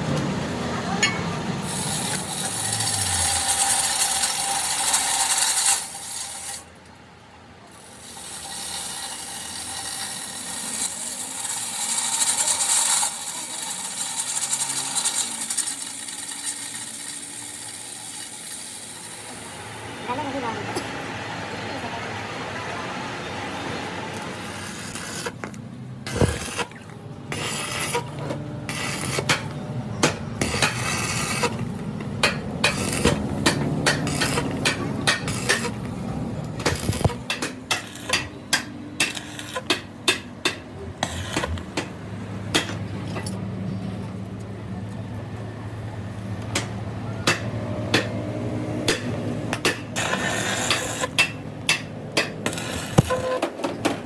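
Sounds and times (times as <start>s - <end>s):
metal tools clanking: 1.0s - 1.4s
sharp hammer-like strikes: 32.2s - 35.8s, 46.6s - 48.2s, 48.8s - 50.0s.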